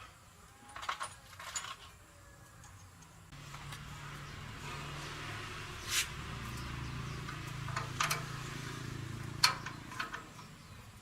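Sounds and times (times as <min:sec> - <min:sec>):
tools and parts clinking: 0:00.0 - 0:03.9, 0:06.5 - 0:08.5, 0:09.2 - 0:10.7.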